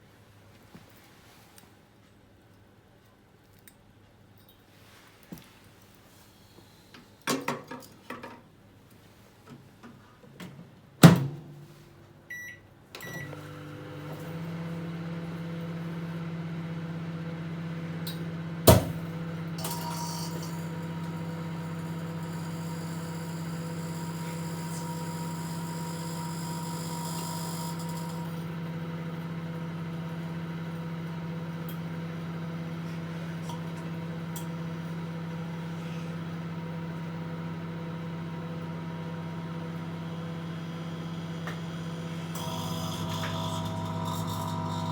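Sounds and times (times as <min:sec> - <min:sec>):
keypad beeps: 0:12.3 - 0:13.3
microwave running hum: 0:12.3 - 0:44.9
microwave door shutting: 0:18.6 - 0:19.1.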